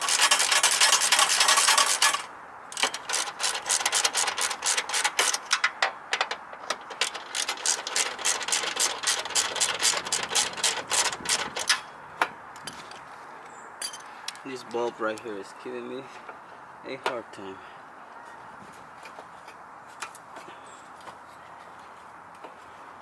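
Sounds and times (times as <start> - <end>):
ratchet wrench clicking: 0.0 - 11.8.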